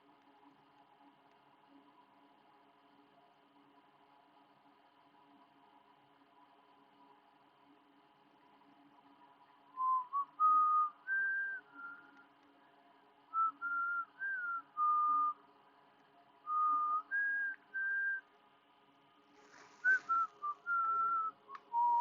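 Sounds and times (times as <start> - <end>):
faint steady hum: 0.0 - 22.0
person whistling a tune: 9.8 - 12.2, 19.8 - 22.0.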